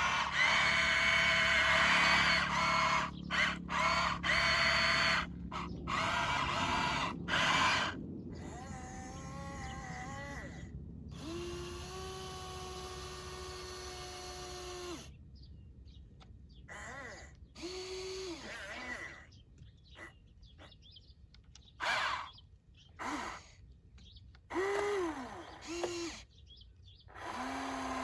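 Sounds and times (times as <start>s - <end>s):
toy electric motors whining: 0.0s - 10.6s, 11.2s - 15.1s, 16.7s - 19.3s, 21.6s - 22.4s, 23.0s - 23.6s, 24.4s - 26.3s, 27.1s - 28.0s.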